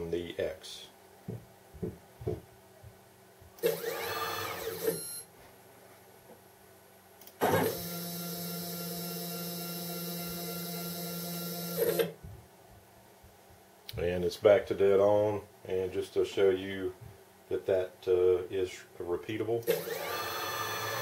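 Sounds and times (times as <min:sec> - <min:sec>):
stepper motor whine: 0:07.4 - 0:12.1, 0:19.7 - 0:21.0.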